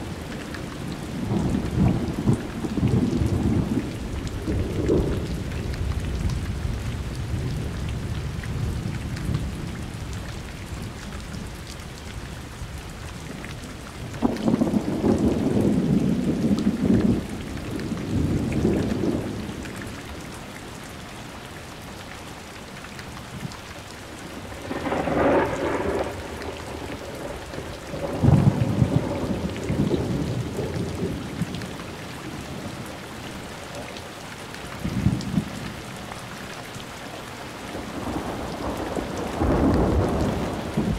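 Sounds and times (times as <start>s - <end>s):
steady rain: 0.0s - 40.9s
thunder rumbling: 1.1s - 9.9s, 14.1s - 20.0s, 24.1s - 32.9s, 37.8s - 40.9s
sharp thunder crack: 24.6s - 30.6s.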